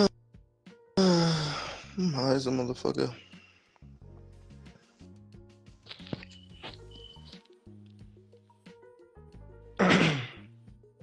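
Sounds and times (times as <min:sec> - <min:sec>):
music with low bass notes: 0:03.8 - 0:11.0.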